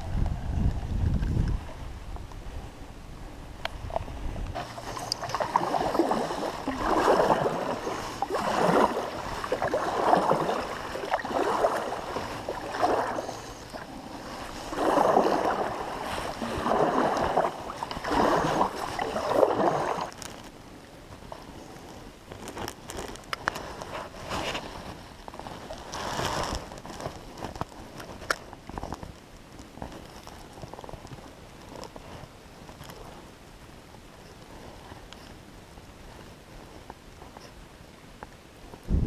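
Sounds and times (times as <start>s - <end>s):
paddle strokes splashing water: 3.8s - 28.4s.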